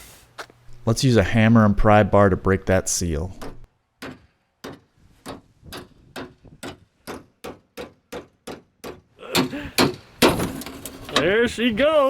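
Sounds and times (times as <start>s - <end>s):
hammer striking metal pry bar: 4.0s - 10.6s.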